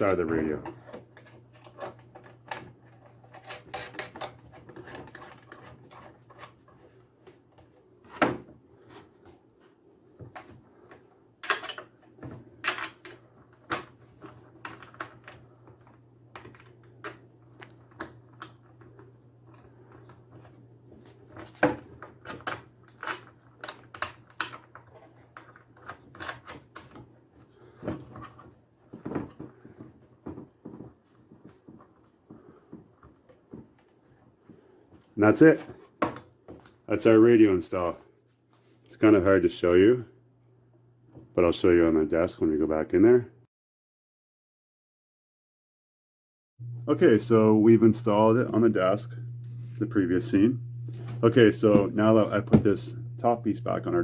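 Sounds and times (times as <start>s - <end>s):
steady low hum: 46.6s - 54.0s.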